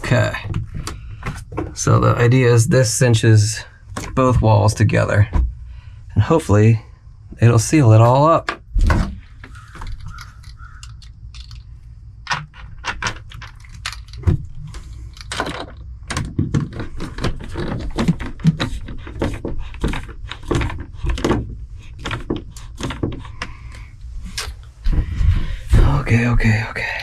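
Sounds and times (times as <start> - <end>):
steady low rumble: 0.0 - 8.4, 23.5 - 27.0
plastic window frame clicks and knocks: 15.3 - 23.6.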